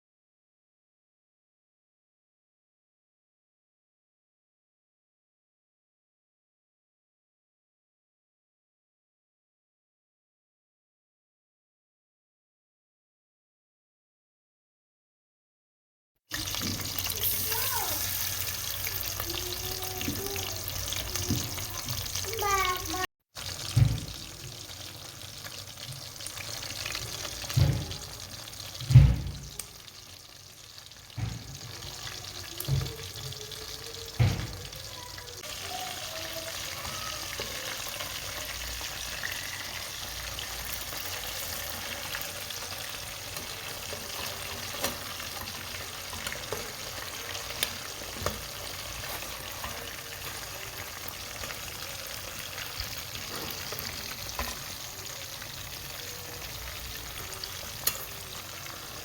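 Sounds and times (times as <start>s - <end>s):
chicken sizzling in oil: 16.3s - 59.0s.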